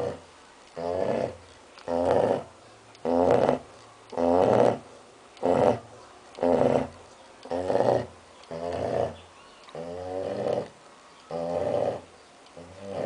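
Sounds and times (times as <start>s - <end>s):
dog snoring: 11.3s - 13.0s.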